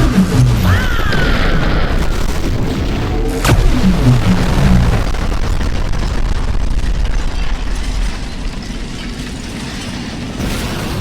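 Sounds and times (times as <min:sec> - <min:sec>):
loud dense rumbling: 0:00.0 - 0:11.0
short low notes: 0:03.5 - 0:05.1.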